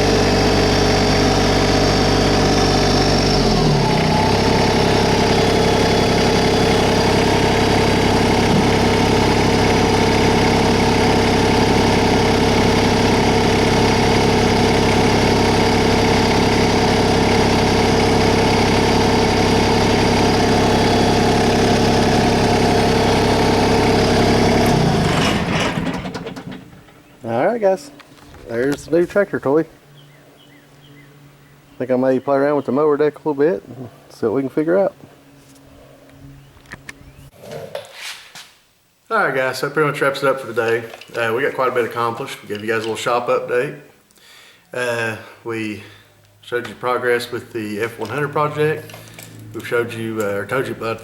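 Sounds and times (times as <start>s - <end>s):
tractor diesel engine running: 0.0s - 32.4s, 45.4s - 51.0s.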